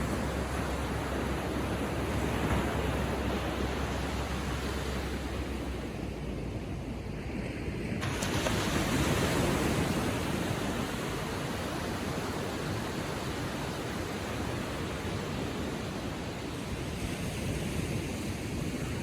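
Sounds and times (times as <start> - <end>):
ocean waves lapping on shore: 0.0 - 19.0.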